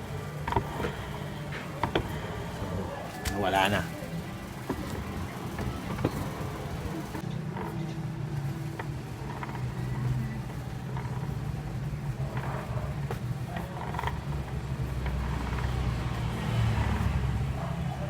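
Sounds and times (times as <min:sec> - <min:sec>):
scooter engine running: 0:00.0 - 0:18.0.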